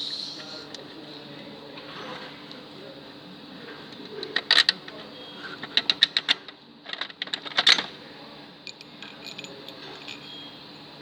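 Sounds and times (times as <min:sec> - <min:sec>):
metal parts rattling: 0:04.2 - 0:08.0, 0:08.7 - 0:10.5.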